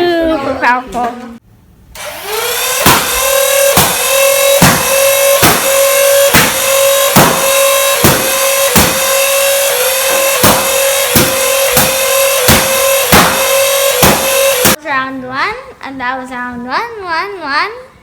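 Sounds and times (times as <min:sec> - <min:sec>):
toy blaster motors whining: 0:02.0 - 0:14.8
darts firing with sharp knocks: 0:02.8 - 0:14.8.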